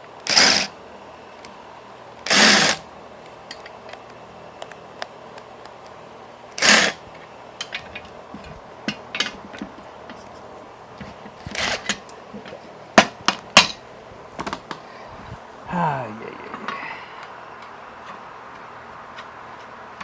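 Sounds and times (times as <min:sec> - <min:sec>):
hand tools clanking on metal: 0:07.6 - 0:10.2.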